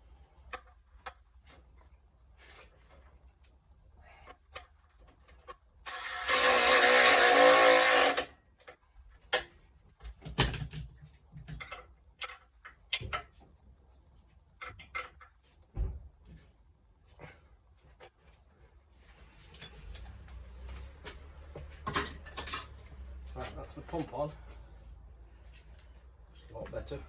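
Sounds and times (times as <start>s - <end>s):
power tool running: 5.9s - 8.3s
tools and metal parts clinking: 9.5s - 13.4s, 19.3s - 20.4s, 21.7s - 23.4s.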